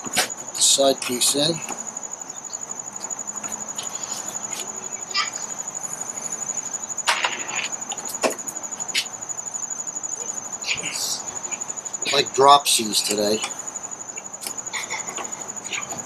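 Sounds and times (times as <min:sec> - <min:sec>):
insects trilling: 0:00.0 - 0:16.0.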